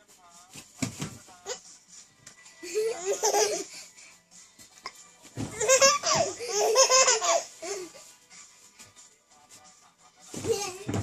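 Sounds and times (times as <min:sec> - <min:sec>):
baby laughing: 0:02.6 - 0:03.8, 0:05.5 - 0:08.0.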